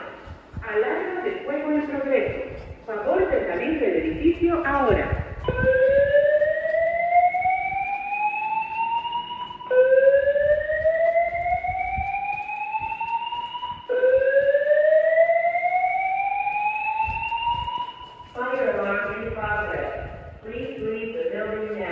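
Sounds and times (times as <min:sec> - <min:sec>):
fire alarm whoop tone: 0:05.4 - 0:18.4.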